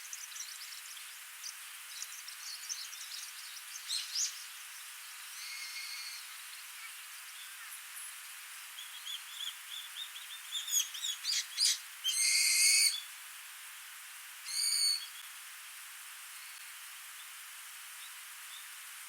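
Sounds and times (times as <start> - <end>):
birds chirping: 8.8 - 13.0
buzzy bird calls: 8.8 - 13.1.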